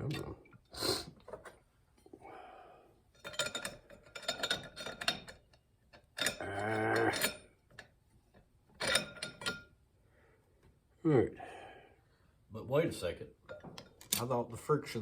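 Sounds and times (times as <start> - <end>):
metal plates clinking: 3.1 - 7.9, 8.7 - 9.8.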